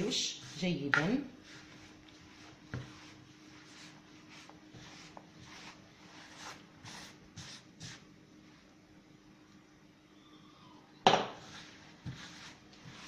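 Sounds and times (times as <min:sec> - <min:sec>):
hands rubbing flour in bowl: 0:00.0 - 0:08.6, 0:11.3 - 0:13.0.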